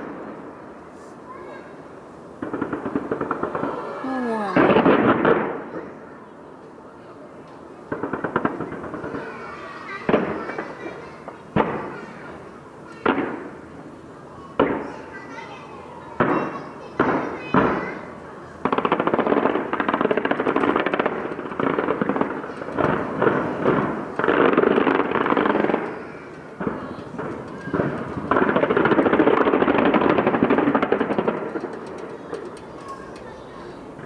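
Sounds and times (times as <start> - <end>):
firework bangs: 2.3 - 6.0, 16.2 - 33.1
firework crackling pops: 2.4 - 6.0, 16.2 - 34.0.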